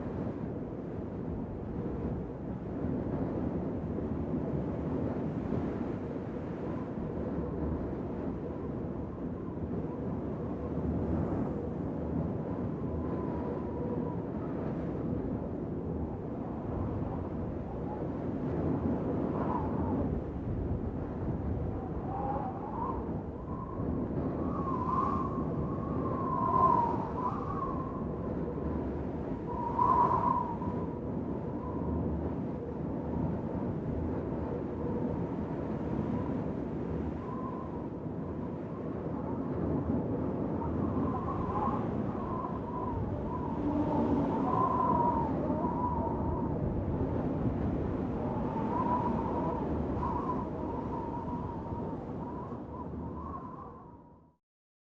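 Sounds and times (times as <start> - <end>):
wind blowing low rumble: 0.0 - 54.4
faint wavering whistle: 21.7 - 28.8, 29.4 - 32.0, 37.1 - 38.1, 40.5 - 47.3, 48.1 - 54.4.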